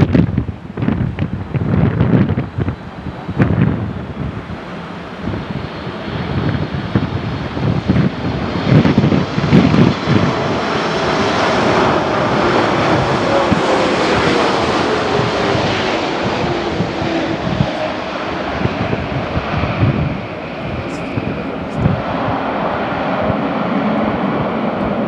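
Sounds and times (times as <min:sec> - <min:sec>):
jet engine roar: 0:00.0 - 0:25.0
wind buffeting microphone: 0:00.0 - 0:25.0.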